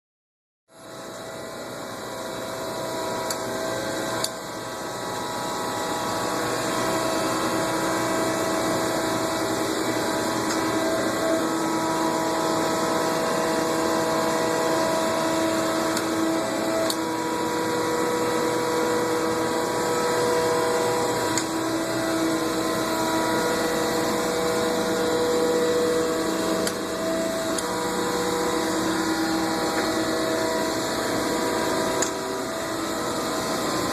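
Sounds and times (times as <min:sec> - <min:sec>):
surface grinder humming: 0:04.8 - 0:33.9
sharp click: 0:32.0 - 0:32.2.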